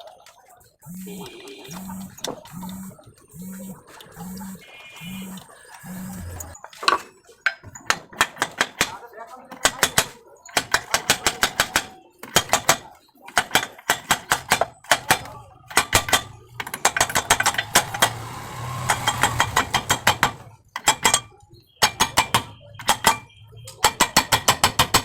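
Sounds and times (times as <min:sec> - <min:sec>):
rapid metallic clicking: 0:10.6 - 0:21.2.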